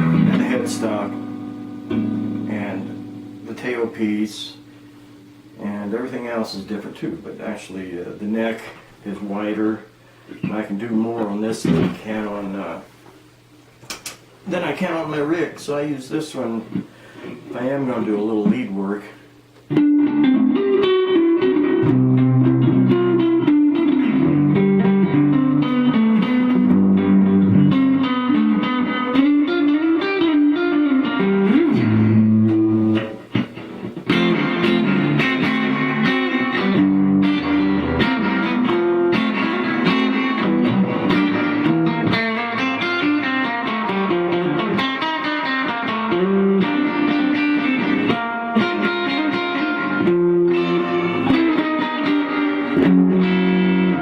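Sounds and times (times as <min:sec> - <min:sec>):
electric guitar lead: 0:00.0 - 0:05.6, 0:11.6 - 0:12.0, 0:19.4 - 0:54.0.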